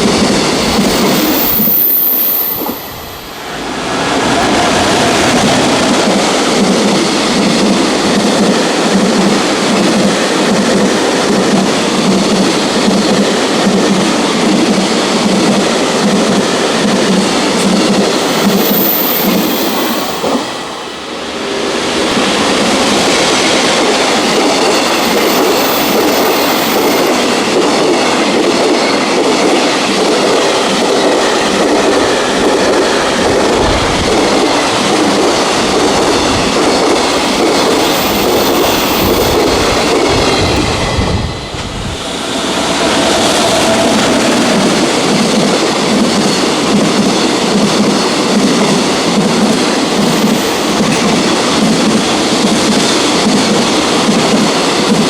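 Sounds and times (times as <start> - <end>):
freight train wheels clattering: 21.7 - 55.0.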